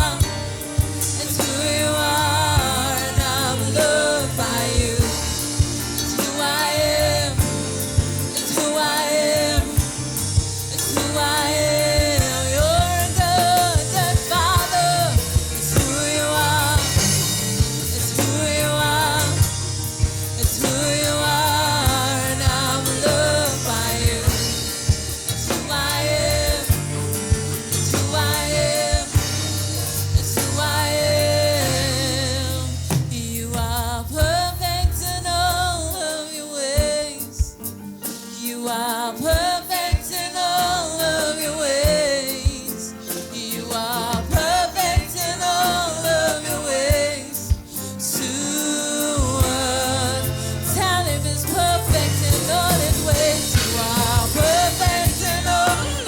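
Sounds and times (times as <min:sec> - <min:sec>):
band with bass and drums: 0:00.0 - 0:38.4, 0:39.2 - 0:56.0
solo voice singing: 0:00.0 - 0:56.0.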